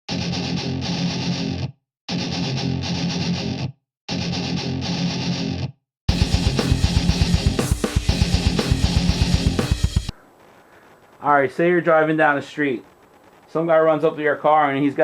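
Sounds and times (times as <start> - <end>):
distorted electric guitar chords: 0.1 - 10.2
drums steady beat: 6.1 - 10.2.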